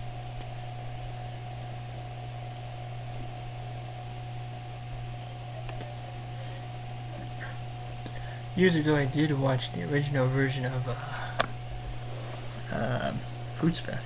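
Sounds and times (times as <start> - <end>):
computer mouse clicks: 3.4 - 4.2, 5.2 - 8.8.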